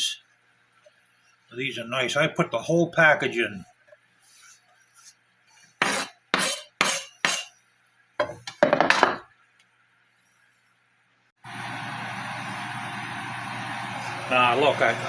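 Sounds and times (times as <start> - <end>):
utensils knocking on frying pan: 8.2 - 9.3.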